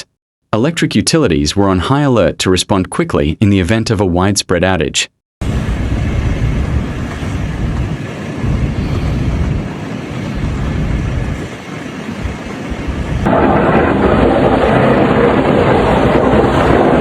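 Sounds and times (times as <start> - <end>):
wind buffeting microphone: 5.4 - 17.0.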